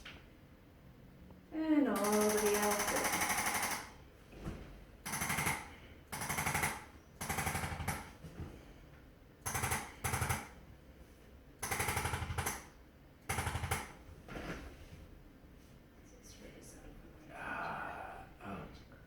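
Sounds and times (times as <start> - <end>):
electric percussion device pulsing: 2.0 - 3.9.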